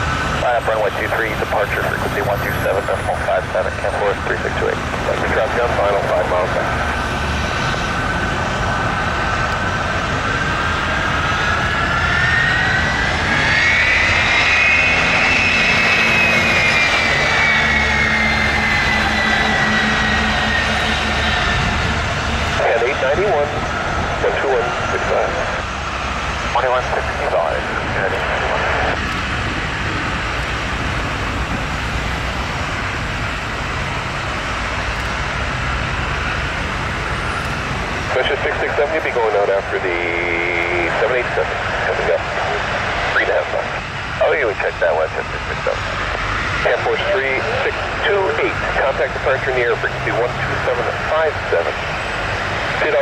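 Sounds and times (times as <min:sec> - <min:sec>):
jet engines whining: 0:00.0 - 0:53.0.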